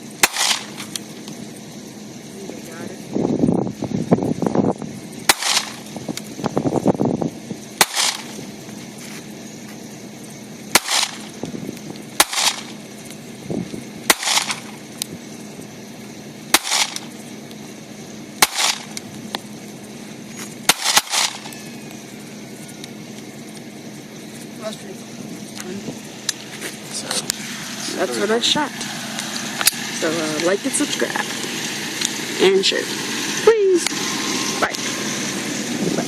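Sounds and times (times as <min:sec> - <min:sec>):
pistol shots with echo: 0:00.2 - 0:00.9, 0:05.3 - 0:05.9, 0:07.8 - 0:08.4, 0:10.7 - 0:11.3, 0:12.2 - 0:12.8, 0:14.1 - 0:14.7, 0:16.5 - 0:17.1, 0:18.4 - 0:19.0, 0:20.7 - 0:21.6.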